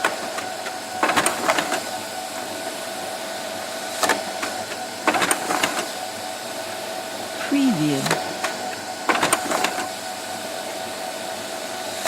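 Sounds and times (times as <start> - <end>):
printer mechanical whir: 0.0 - 6.9, 8.0 - 10.4.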